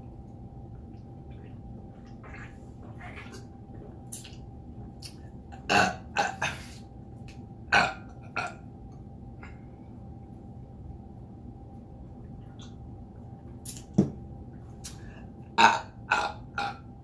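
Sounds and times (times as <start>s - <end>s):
woman burping: 5.6s - 6.6s.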